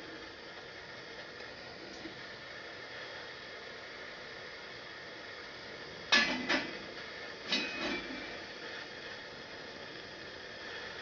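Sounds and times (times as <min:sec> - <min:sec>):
gas torch flame hissing: 0:00.0 - 0:11.0.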